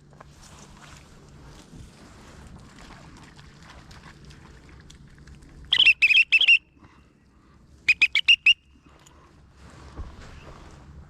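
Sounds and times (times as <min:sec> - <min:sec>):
high-pitched peeping calls: 0:05.7 - 0:06.6, 0:07.9 - 0:08.6.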